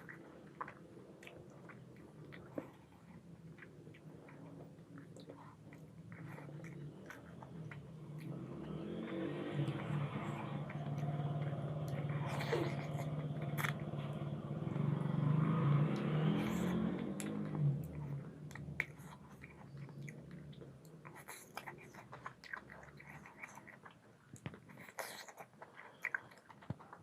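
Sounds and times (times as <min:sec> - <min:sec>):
chewing and biting: 0:00.0 - 0:27.0
low motor hum: 0:05.9 - 0:21.0.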